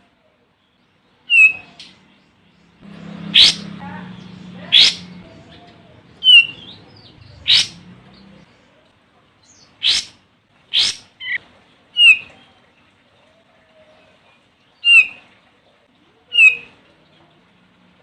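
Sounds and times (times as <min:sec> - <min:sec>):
bird calling sharp notes: 0:01.3 - 0:02.0, 0:02.8 - 0:08.4, 0:09.8 - 0:11.4, 0:12.0 - 0:12.4, 0:14.8 - 0:15.2, 0:16.3 - 0:16.8.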